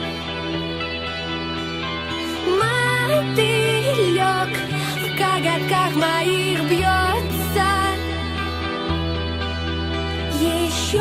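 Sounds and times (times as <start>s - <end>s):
steady bass: 0.0s - 11.0s
sustained guitar chords: 0.0s - 11.0s.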